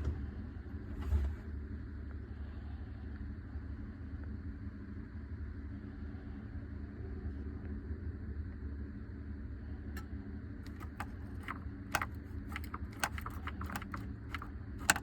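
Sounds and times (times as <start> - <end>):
low mechanical hum: 0.0 - 15.0
sharp clicks and rattles: 10.0 - 15.0.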